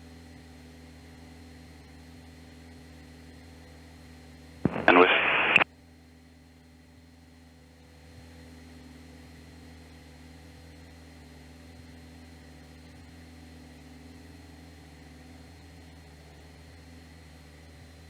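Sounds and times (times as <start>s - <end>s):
aircraft engine drone: 4.7s - 5.6s
intercom hiss: 4.7s - 5.6s.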